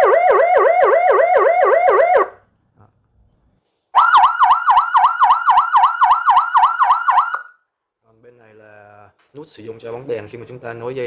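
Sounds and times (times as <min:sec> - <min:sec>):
electronic siren warbling yelp: 0:00.0 - 0:02.4, 0:04.0 - 0:07.5.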